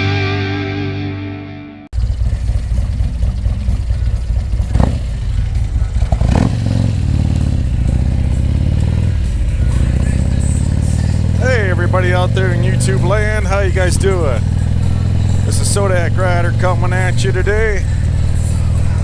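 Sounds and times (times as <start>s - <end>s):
intro music: 0.0s - 1.9s, 7.5s - 19.0s
motorcycle engine running: 1.9s - 19.0s.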